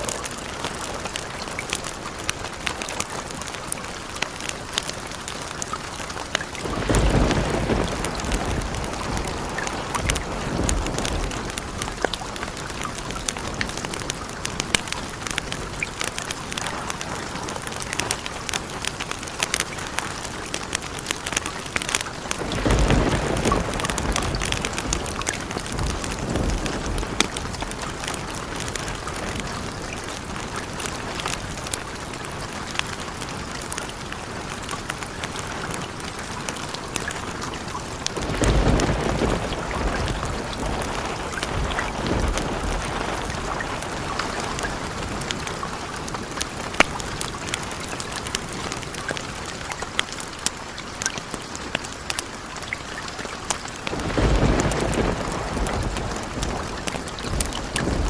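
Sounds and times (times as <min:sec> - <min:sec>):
heavy rain: 0:00.0 - 0:58.0
thunder rumbling: 0:06.0 - 0:18.0, 0:21.4 - 0:31.7, 0:37.9 - 0:47.5, 0:53.7 - 0:58.0.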